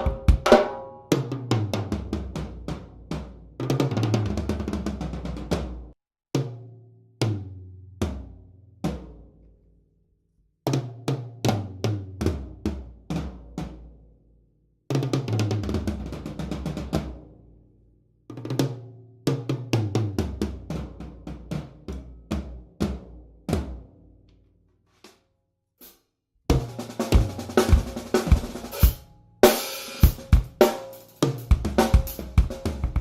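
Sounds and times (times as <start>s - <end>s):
drum kit toms: 0.0s - 6.5s, 26.5s - 33.0s.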